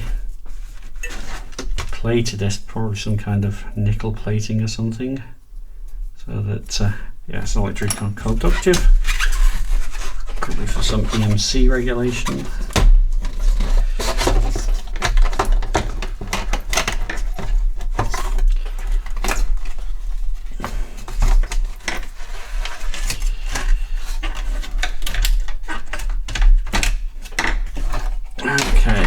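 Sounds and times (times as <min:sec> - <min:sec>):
computer parts rubbing and clicking: 0:06.7 - 0:29.0.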